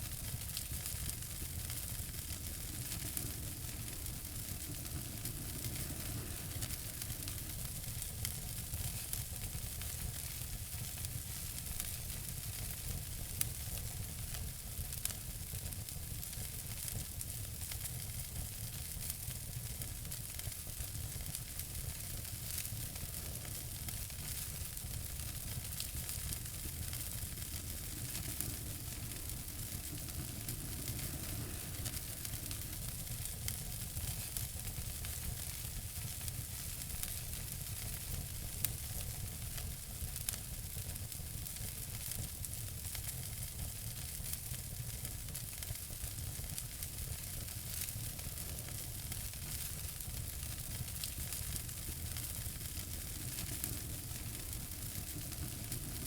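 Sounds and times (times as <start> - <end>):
wood fire crackling: 0.0 - 56.0
low rumble: 27.0 - 33.4.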